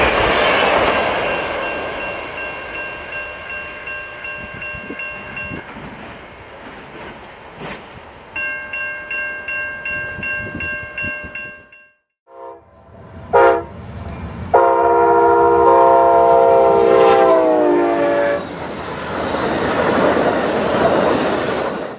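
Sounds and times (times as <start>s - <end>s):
train rushing and rattling past: 0.0s - 11.4s, 12.6s - 21.9s
locomotive horn: 12.3s - 13.8s, 14.5s - 18.5s.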